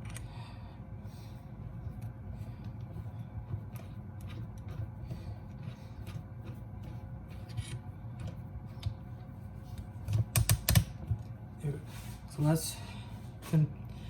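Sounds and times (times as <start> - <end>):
refrigerator hum: 0.0 - 14.0
rubbing and handling: 1.1 - 10.3.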